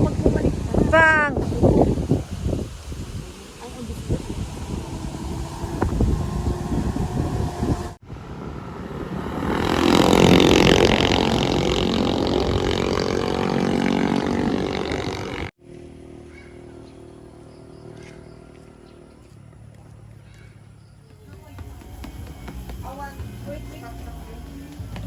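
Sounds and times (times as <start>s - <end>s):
vehicle engine running: 1.4s - 20.4s.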